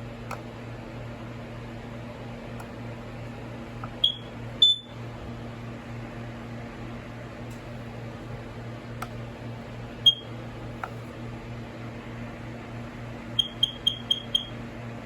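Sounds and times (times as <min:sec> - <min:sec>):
steady low hum: 0:00.0 - 0:15.0
smoke alarm beeps: 0:04.0 - 0:05.0, 0:10.0 - 0:10.3, 0:13.3 - 0:14.6.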